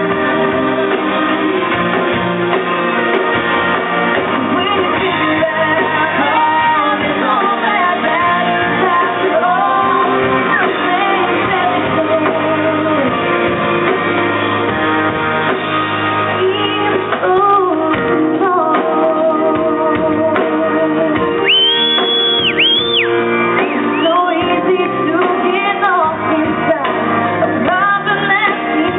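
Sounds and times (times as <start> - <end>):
live band playing: 0.0 - 28.9
woman singing country ballad: 4.2 - 13.6, 16.3 - 22.1, 23.6 - 28.9.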